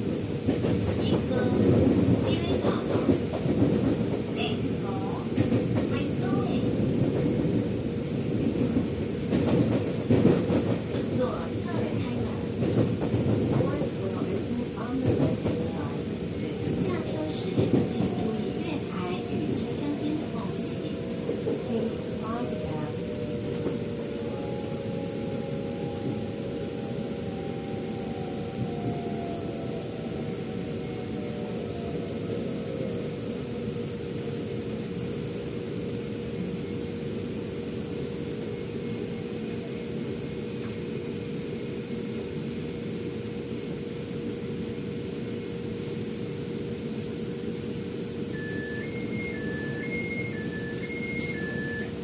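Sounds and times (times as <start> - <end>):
metro train rumble and hum: 0.0 - 52.0
two-tone warning beeping: 48.3 - 52.0.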